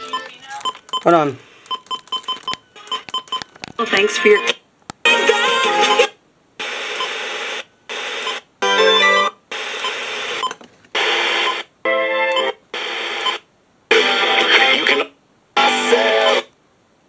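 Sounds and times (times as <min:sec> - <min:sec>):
radio snippets of music and broadcast: 0:00.0 - 0:06.1.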